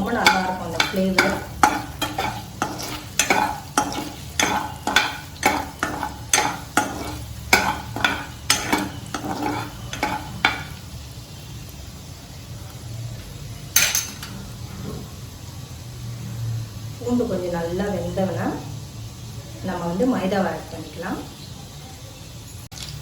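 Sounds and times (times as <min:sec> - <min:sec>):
utensil scraping pan: 0:00.0 - 0:10.8
garlic sizzling in butter: 0:00.0 - 0:14.4.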